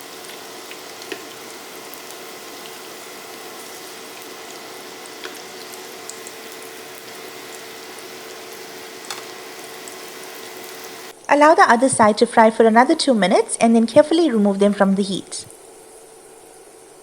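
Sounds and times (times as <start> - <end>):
pancakes sizzling in oil: 0.0 - 11.1.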